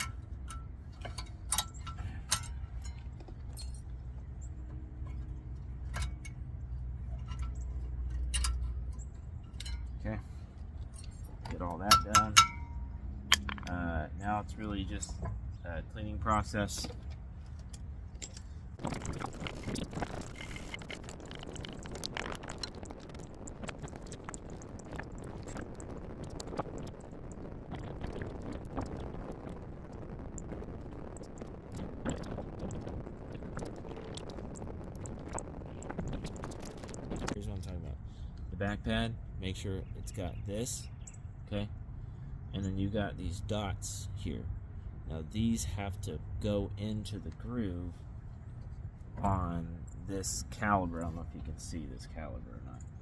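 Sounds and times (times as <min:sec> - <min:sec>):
metal parts and tools clinking: 0:00.0 - 0:04.0
small clicks and scrapes: 0:00.0 - 0:12.2, 0:16.8 - 0:37.4
continuous noisy hiss: 0:00.0 - 0:53.0
steady low rumble: 0:00.0 - 0:53.0.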